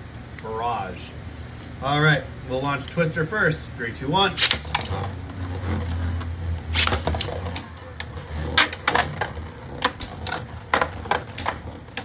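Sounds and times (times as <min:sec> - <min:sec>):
spinning tops whirring: 0:04.3 - 0:12.0
plastic tops clicking together: 0:04.4 - 0:12.0
low hum: 0:04.5 - 0:12.0.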